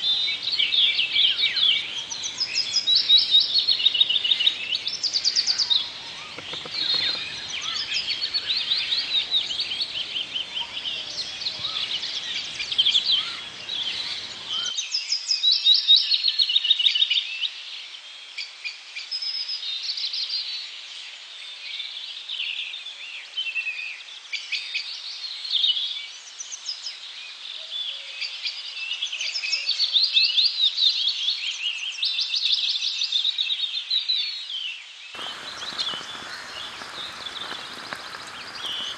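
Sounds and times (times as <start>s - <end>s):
rapid bird trills: 0.0s - 14.7s, 35.2s - 38.9s
birds singing and chirping: 0.0s - 15.2s, 35.2s - 38.9s.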